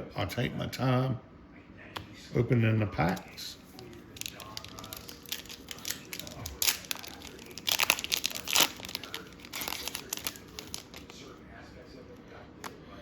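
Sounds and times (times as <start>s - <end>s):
wrapper tearing and crinkling: 3.8s - 11.2s.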